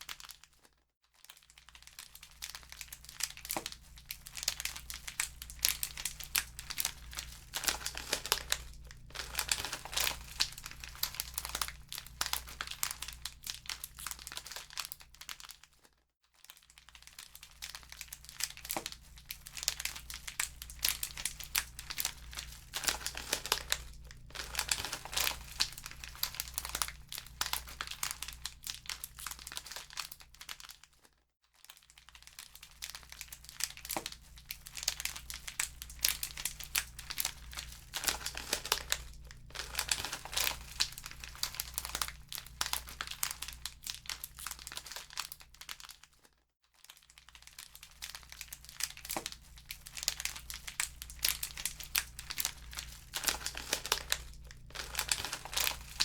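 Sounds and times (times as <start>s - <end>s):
low steady hum: 2.4s - 15.0s, 17.4s - 30.2s, 32.8s - 45.4s, 47.9s - 56.0s
wood fire crackling: 4.3s - 14.3s, 18.8s - 28.9s, 34.8s - 44.1s, 49.9s - 56.0s.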